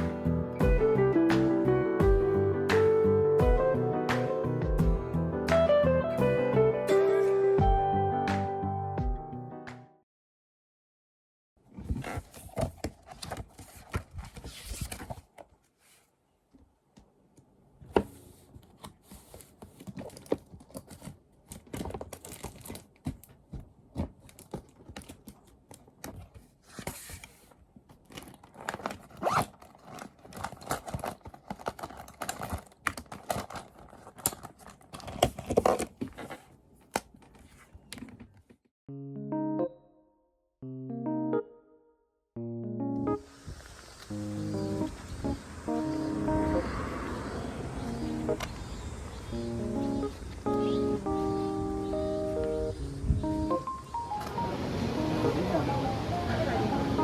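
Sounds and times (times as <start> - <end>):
packaging crinkling and tearing: 19.1 - 37.6.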